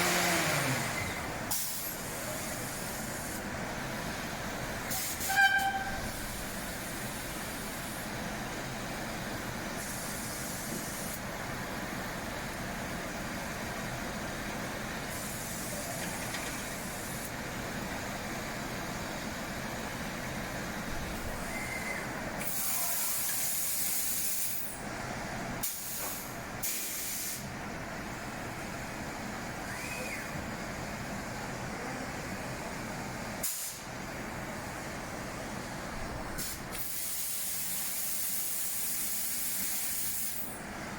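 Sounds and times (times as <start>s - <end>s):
woodworking machine running: 0.0s - 1.4s
compressed air hissing: 1.5s - 3.5s, 4.9s - 8.1s, 9.7s - 11.2s, 15.1s - 17.4s, 22.4s - 24.8s, 25.6s - 27.5s, 33.4s - 33.9s, 36.4s - 40.6s.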